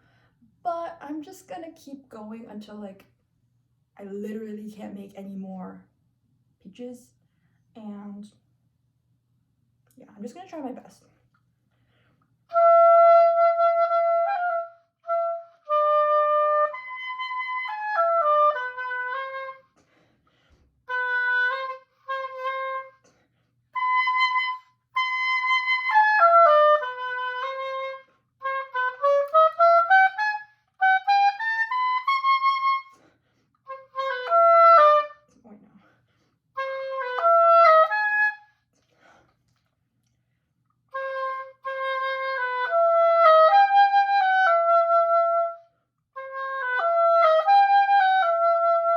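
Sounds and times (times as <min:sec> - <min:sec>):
solo oboe playing: 0:12.5 - 0:19.9, 0:20.8 - 0:23.1, 0:23.7 - 0:35.4, 0:36.5 - 0:38.6, 0:40.9 - 0:48.9.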